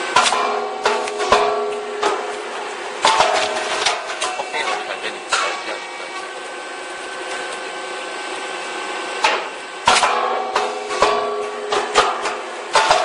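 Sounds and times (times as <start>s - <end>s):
machine mechanical hum: 0.0s - 13.0s
sharp machine knocks: 0.2s - 2.3s, 9.2s - 13.0s.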